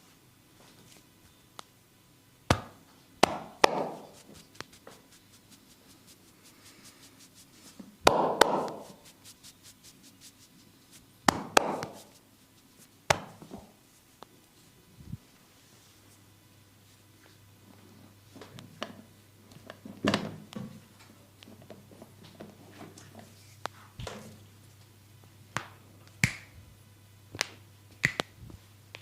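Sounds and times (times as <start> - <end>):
hands slapping body: 2.5 - 5.1, 8.0 - 9.8, 11.2 - 12.2, 13.1 - 13.5, 25.6 - 26.5, 27.4 - 28.3.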